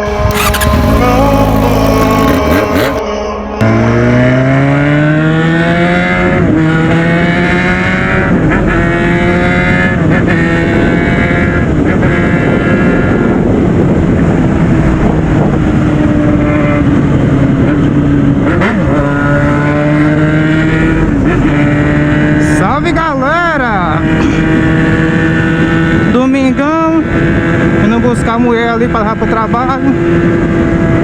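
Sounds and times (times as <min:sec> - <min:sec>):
motorcycle engine revving through gears: 0:00.0 - 0:03.0, 0:03.7 - 0:22.7, 0:24.0 - 0:26.2, 0:29.9 - 0:31.0.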